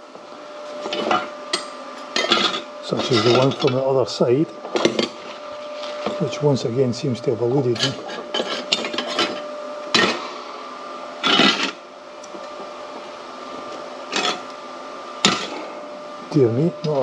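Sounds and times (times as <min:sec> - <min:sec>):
steady hum: 0:00.0 - 0:17.0
metal tools knocking and scraping: 0:00.8 - 0:03.8, 0:07.7 - 0:09.4.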